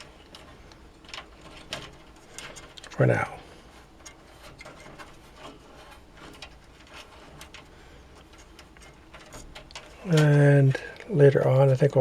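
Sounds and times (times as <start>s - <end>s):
plastic parts clicking and tapping: 0.0s - 3.0s, 4.0s - 11.1s.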